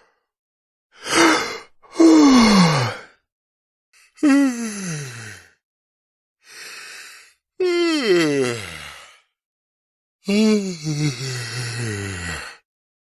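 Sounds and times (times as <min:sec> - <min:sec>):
man yawning: 0:01.0 - 0:03.1, 0:04.2 - 0:05.2, 0:07.6 - 0:08.7.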